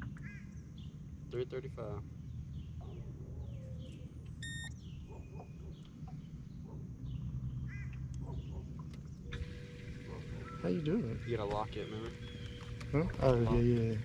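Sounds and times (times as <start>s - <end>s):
steady low rumble: 0.0s - 14.0s
short electronic beep: 4.4s - 4.8s.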